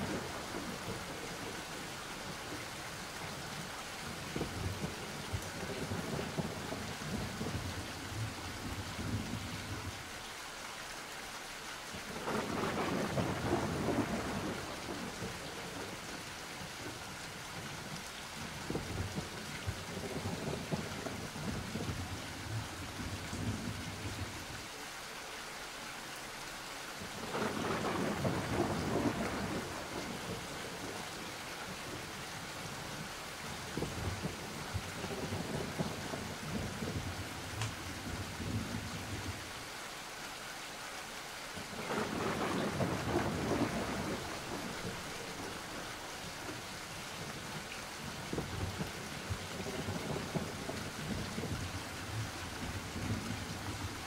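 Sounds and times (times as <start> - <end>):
steady rain: 0.0 - 54.0
rolling thunder: 4.4 - 9.9, 12.2 - 16.0, 18.6 - 24.3, 27.2 - 32.2, 33.7 - 39.4, 41.6 - 46.5, 48.1 - 54.0.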